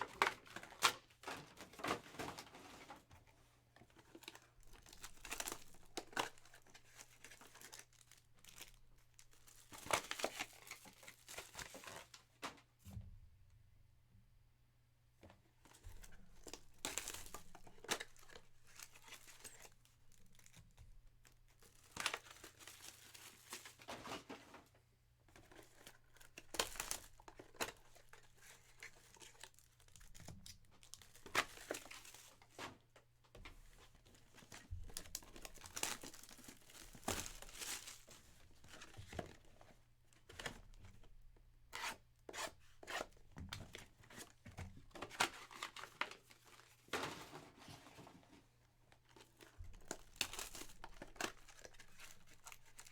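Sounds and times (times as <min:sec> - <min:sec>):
card pack wrappers torn and crinkled: 0:04.1 - 0:12.2, 0:15.9 - 0:23.9, 0:25.6 - 0:32.6, 0:34.3 - 0:39.4, 0:45.0 - 0:46.6, 0:49.1 - 0:52.9.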